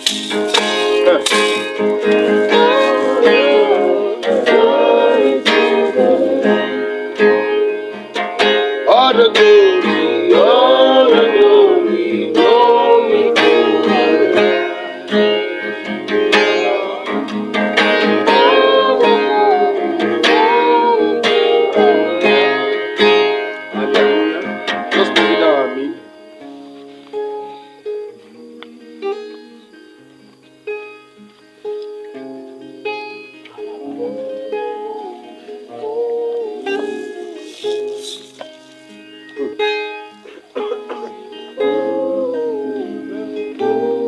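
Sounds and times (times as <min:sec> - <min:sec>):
person singing: 0:00.0 - 0:07.5, 0:08.9 - 0:23.1, 0:23.7 - 0:25.4, 0:28.1 - 0:29.8, 0:33.5 - 0:38.7, 0:40.4 - 0:44.0
plucked strings: 0:00.0 - 0:44.0.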